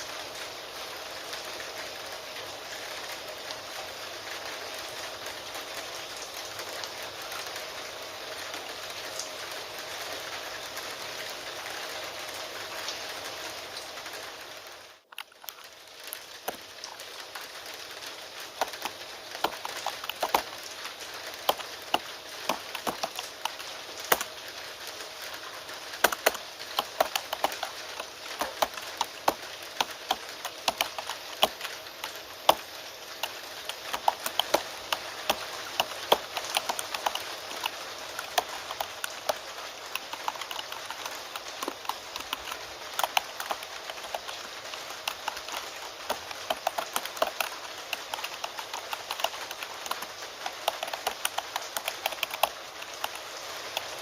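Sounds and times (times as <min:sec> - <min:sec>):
rain hiss: 0:00.0 - 0:54.0
keyboard typing clicks: 0:18.6 - 0:20.6, 0:21.4 - 0:24.4, 0:26.0 - 0:54.0.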